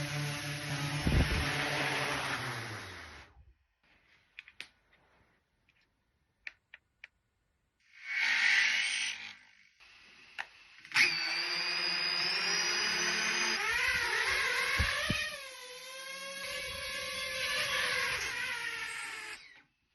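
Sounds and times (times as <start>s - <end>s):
drone motors whining: 0.0s - 3.3s, 10.3s - 19.7s.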